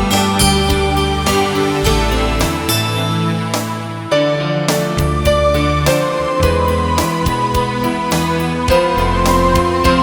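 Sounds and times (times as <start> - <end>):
gentle instrumental music: 0.0 - 10.0.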